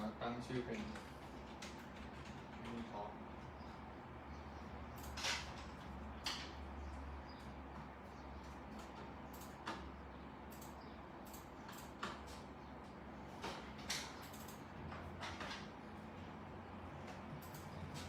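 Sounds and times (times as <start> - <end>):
light irregular clicks: 8.4 - 9.9, 10.5 - 13.0, 17.0 - 18.0.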